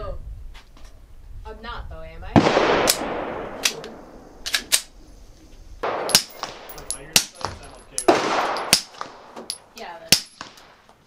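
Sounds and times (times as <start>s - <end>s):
suppressed pistol shot: 5.8s - 7.3s
sharp cracks and clinks: 5.8s - 11.0s.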